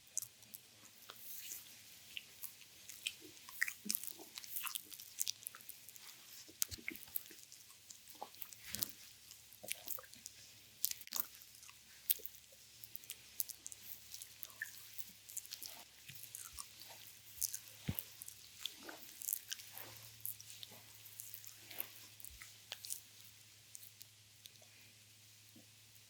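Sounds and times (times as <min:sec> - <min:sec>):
hands massaging oiled skin: 0:13.1 - 0:23.1.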